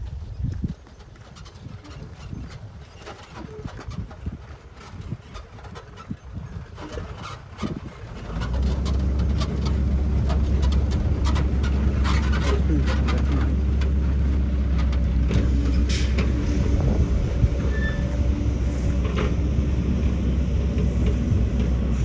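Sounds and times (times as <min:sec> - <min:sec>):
knocks and clatter: 0:01.0 - 0:22.0
heavy diesel engine droning: 0:08.0 - 0:22.0.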